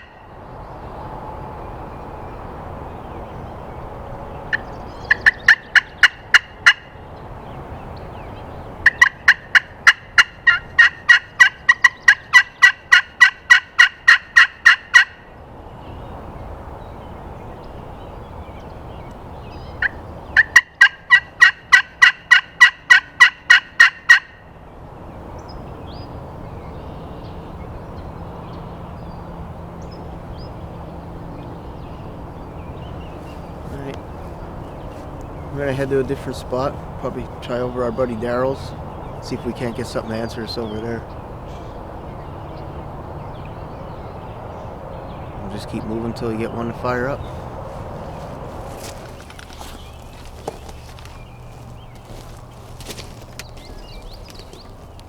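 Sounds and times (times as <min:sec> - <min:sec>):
turkey call yelping notes: 0:08.8 - 0:15.2, 0:19.7 - 0:24.4.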